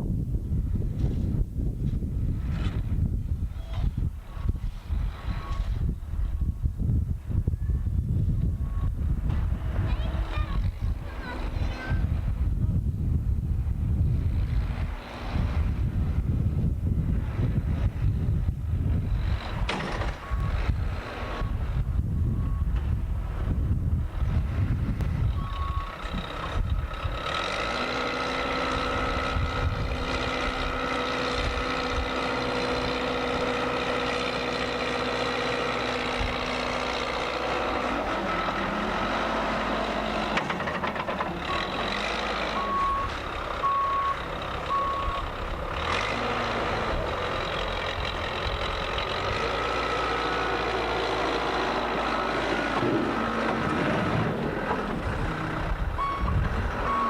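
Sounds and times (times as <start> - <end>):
heavy vehicle engine running: 0.0 - 57.0
reversing alarm beeping: 8.6 - 9.0, 20.2 - 20.7, 25.4 - 26.0, 42.5 - 45.2, 56.0 - 57.0.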